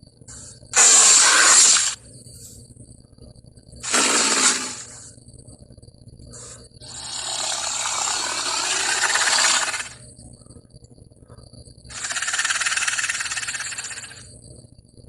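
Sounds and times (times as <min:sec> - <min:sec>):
creature rasping hiss: 0:00.8 - 0:02.0, 0:03.8 - 0:04.9, 0:06.8 - 0:10.0
short noisy rasp: 0:00.8 - 0:02.0, 0:03.8 - 0:05.0.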